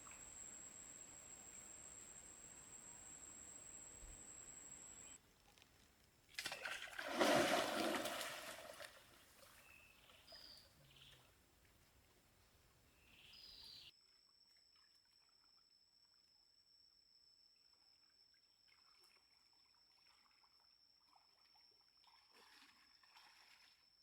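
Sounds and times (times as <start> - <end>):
bird chirps: 0.0 - 5.2, 13.0 - 13.9
water splashing and trickling: 0.0 - 10.5, 22.1 - 23.8.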